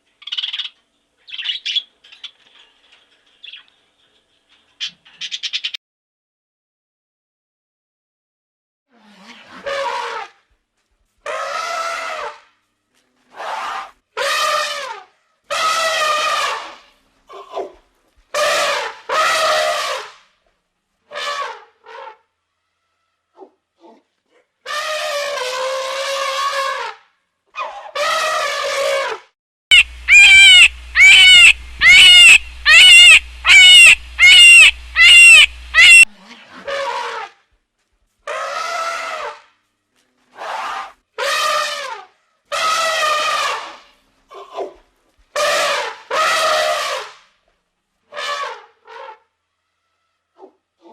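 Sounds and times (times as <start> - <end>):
animal calling loudly: 29.7 - 36.1
low hum: 29.7 - 36.1.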